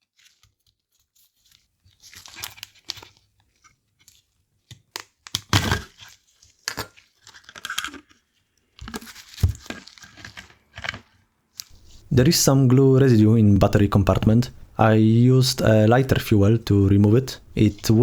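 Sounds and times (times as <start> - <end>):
plastic crinkling and scraping: 0.0 - 4.7, 5.3 - 12.1.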